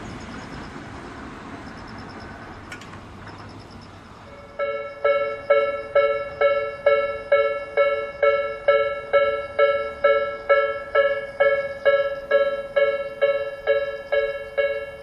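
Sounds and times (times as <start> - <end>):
level crossing bell dinging: 4.3 - 15.0.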